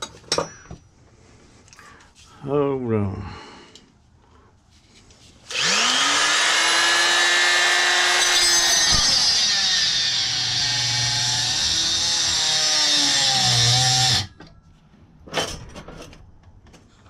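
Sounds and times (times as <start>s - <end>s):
tool cutting copper hiss: 5.4s - 14.3s
power tool motor whine: 5.5s - 14.3s.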